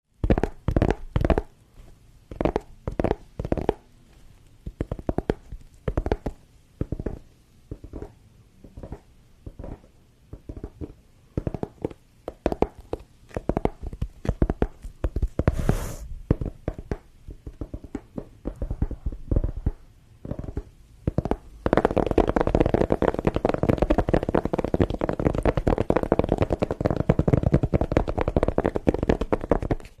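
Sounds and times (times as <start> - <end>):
scraping hiss: 15.4 - 16.2.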